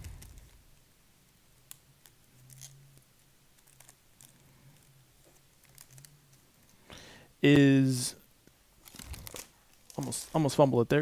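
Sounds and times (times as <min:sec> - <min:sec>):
trading cards rustling: 0:00.0 - 0:00.6, 0:02.0 - 0:06.8, 0:08.8 - 0:11.0.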